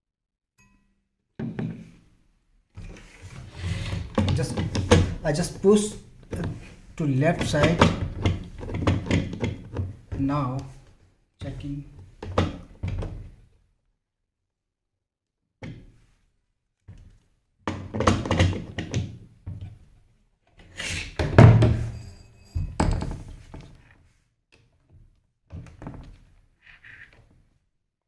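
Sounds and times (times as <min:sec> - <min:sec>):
wooden thunks and knocks: 0:04.0 - 0:05.4, 0:06.3 - 0:10.3.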